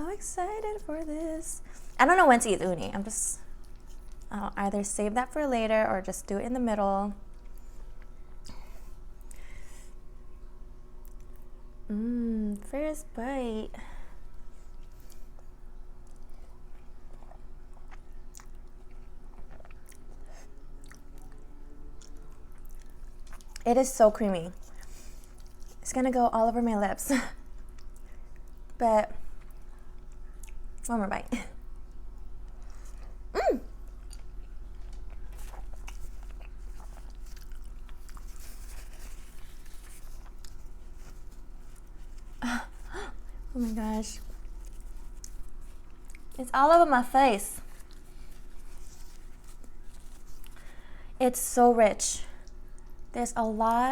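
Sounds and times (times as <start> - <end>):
wet chewing mouth sounds: 3.4 - 4.3, 14.6 - 21.4, 22.0 - 23.7, 24.5 - 25.8, 31.8 - 46.4
person humming: 11.9 - 12.6.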